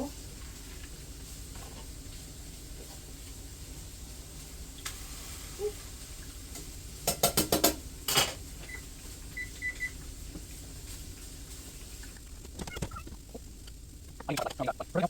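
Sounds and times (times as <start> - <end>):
metal utensil clattering on cookware: 7.1 - 8.4
appliance beeps: 8.6 - 10.0.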